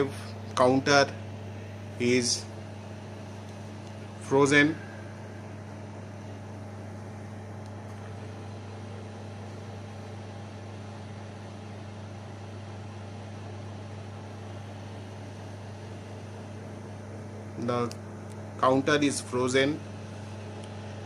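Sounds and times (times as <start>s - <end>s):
person speaking: 0.0s - 1.2s, 2.0s - 2.6s, 4.2s - 5.2s, 17.6s - 18.0s
microwave oven humming: 0.0s - 21.0s.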